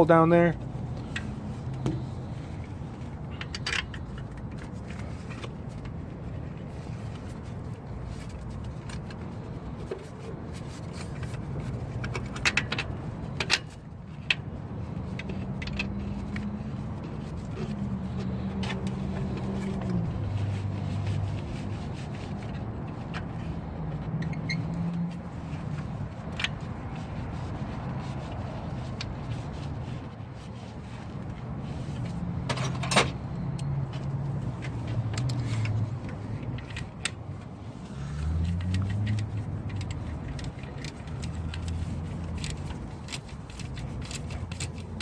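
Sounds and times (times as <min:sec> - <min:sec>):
metal tools clinking and scraping: 0:32.4 - 0:33.7.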